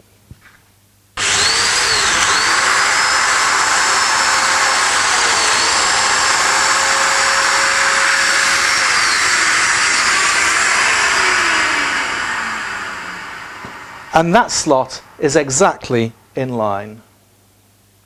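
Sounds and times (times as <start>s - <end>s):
power joiner motor whining: 1.2s - 15.3s.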